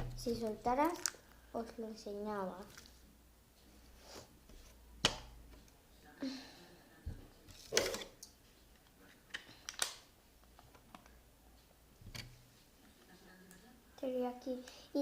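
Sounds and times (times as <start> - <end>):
slime clicks and squelches: 0.8 - 1.2.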